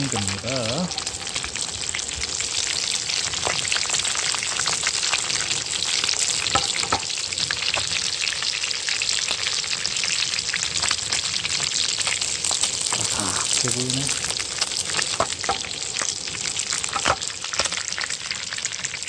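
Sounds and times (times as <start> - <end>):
oil popping: 0.0 - 8.2
fish sizzling in hot oil: 0.0 - 19.0.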